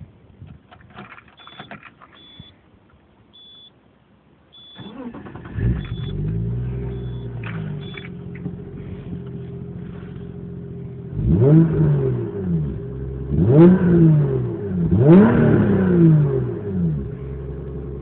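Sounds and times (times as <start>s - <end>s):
car engine idling: 1.0s - 13.6s, 16.4s - 18.0s
clicks: 7.0s - 9.4s.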